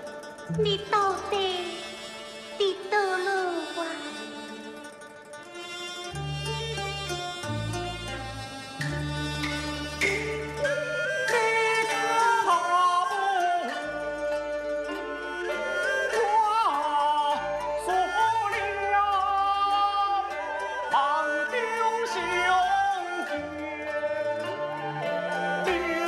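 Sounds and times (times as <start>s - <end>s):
ornamented opera accompaniment music: 0.0s - 26.0s.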